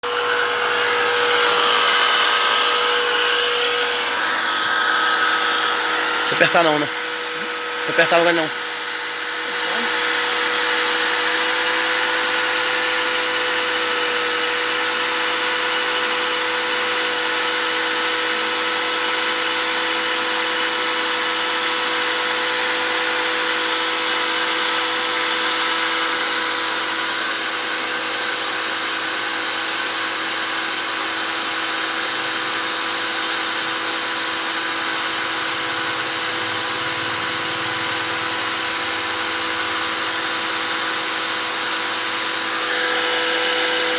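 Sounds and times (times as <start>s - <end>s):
sprayer hissing: 0.0s - 13.0s, 34.0s - 43.9s
electric motor whining: 0.0s - 43.9s.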